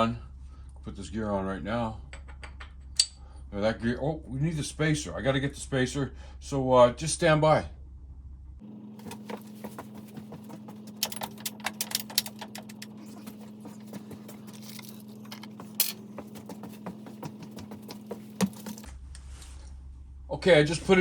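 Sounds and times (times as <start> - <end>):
low hum: 7.8 - 20.3
metal parts clinking: 9.0 - 16.8.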